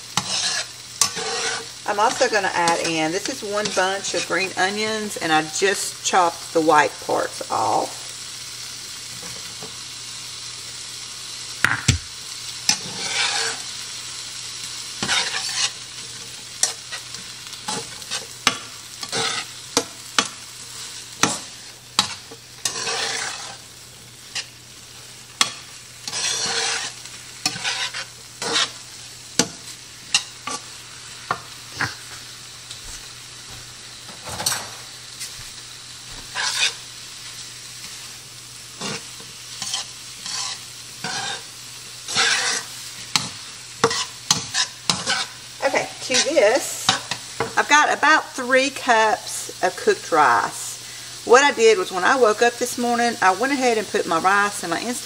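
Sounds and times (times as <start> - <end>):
food sizzling in a pan: 0.0 - 55.0
utensil scraping a pan: 0.2 - 4.3, 12.7 - 13.7, 15.0 - 23.6, 24.2 - 28.8, 36.2 - 36.8, 38.8 - 47.5.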